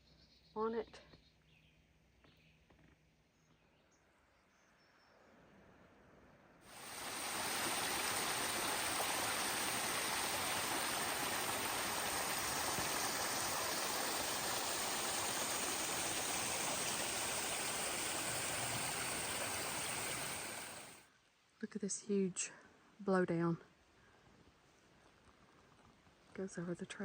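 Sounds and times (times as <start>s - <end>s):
stream rushing over rocks: 6.7s - 21.0s.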